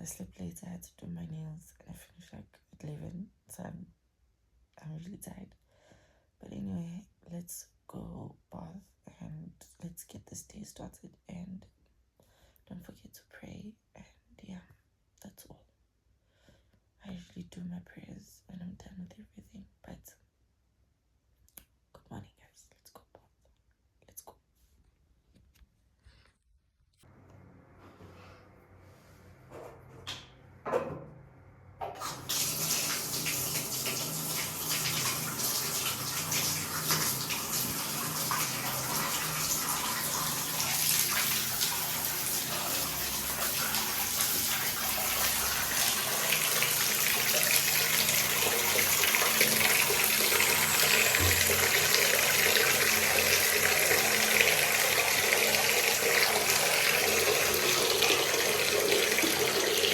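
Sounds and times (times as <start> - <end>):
tap running into bathtub: 31.8 - 59.9.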